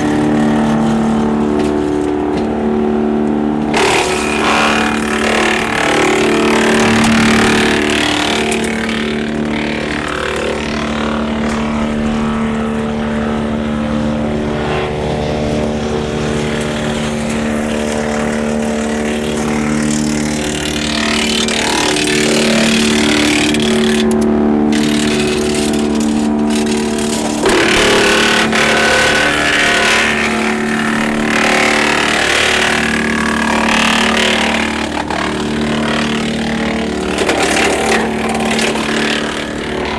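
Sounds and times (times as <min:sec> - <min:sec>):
wood chipper running: 0:00.0 - 0:39.9.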